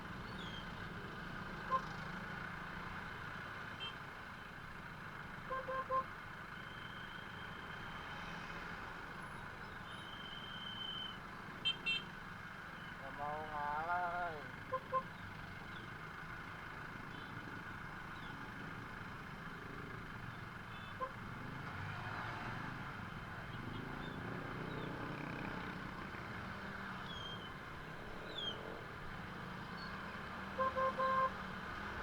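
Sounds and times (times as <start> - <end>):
car horn beeps: 5.5 - 6.1, 10.0 - 12.1, 30.5 - 31.4
traffic hum: 11.2 - 32.0.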